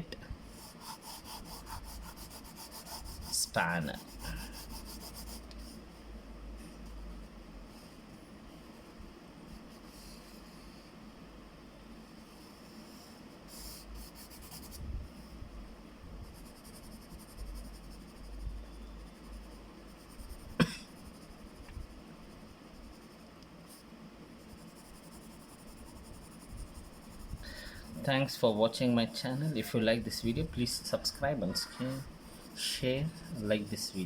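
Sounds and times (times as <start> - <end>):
pencil scratching on paper: 0.5 - 5.8, 13.5 - 14.8, 16.2 - 23.8, 24.4 - 34.0.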